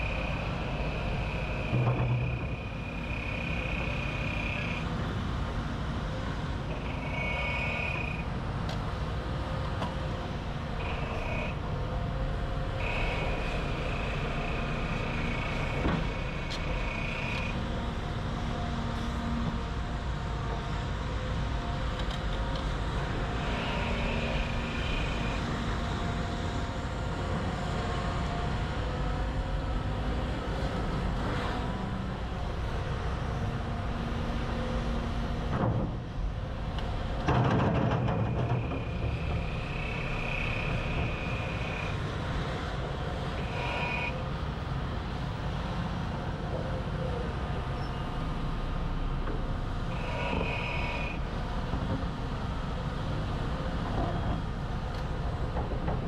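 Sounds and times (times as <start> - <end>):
diesel engine rumble: 0.0 - 56.0.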